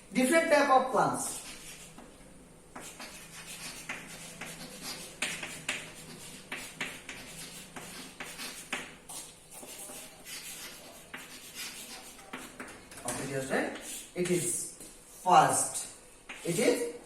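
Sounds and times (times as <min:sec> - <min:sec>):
pen scratching on writing surface: 0:02.8 - 0:12.8, 0:13.8 - 0:14.1.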